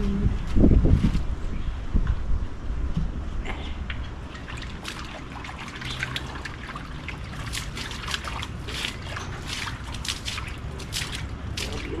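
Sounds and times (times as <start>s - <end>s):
water trickling and splashing: 4.0s - 12.0s.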